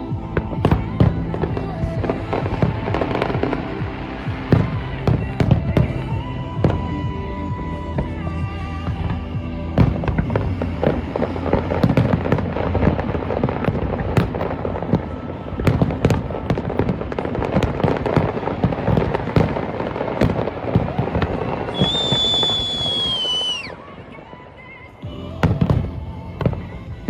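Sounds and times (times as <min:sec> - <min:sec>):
fireworks bangs and crackles: 0:00.0 - 0:27.0
high whistle: 0:21.7 - 0:23.9.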